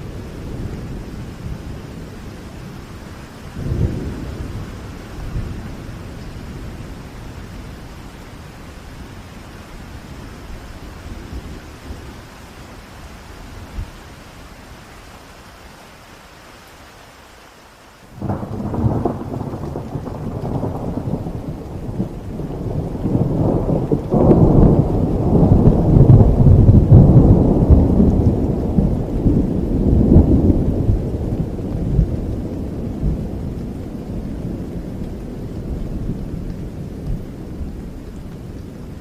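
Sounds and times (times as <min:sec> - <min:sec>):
heavy rain: 0:00.0 - 0:39.0
thunder: 0:03.6 - 0:05.8, 0:18.2 - 0:37.8.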